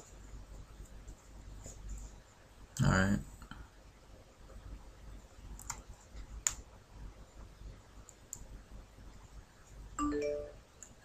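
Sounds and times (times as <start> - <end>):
computer mouse clicks: 5.5 - 6.7, 8.0 - 8.5.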